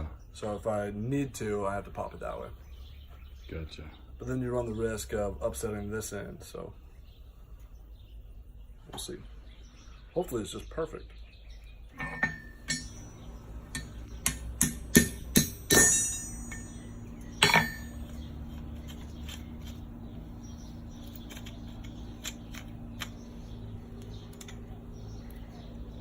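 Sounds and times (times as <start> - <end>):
steady low hum: 0.0 - 26.0
hammer striking steel: 12.0 - 13.1, 13.7 - 18.0.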